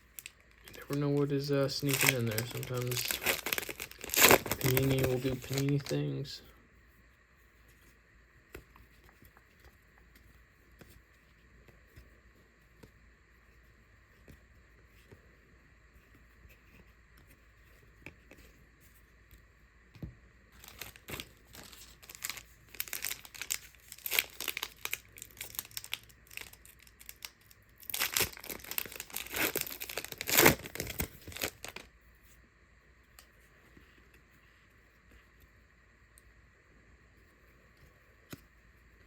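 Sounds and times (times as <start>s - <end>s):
plastic wrapper tearing and crinkling: 0.1s - 6.2s, 20.6s - 31.9s.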